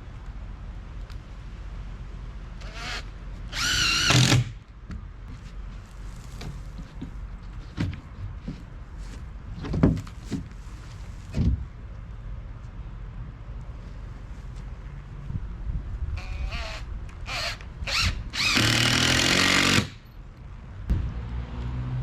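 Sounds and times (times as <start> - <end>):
power drill whining: 2.6 - 4.5, 16.2 - 20.0.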